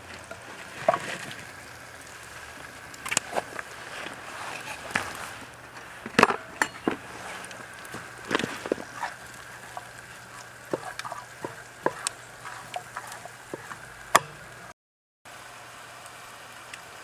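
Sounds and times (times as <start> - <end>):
steady cooking hiss: 0.0 - 14.7, 15.3 - 17.0
utensil clinking against pan: 6.2 - 14.6.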